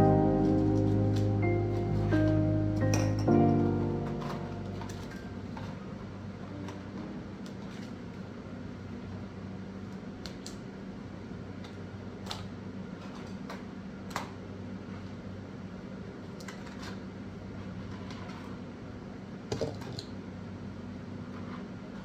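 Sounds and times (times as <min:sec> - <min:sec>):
steady low hum: 0:00.0 - 0:10.2.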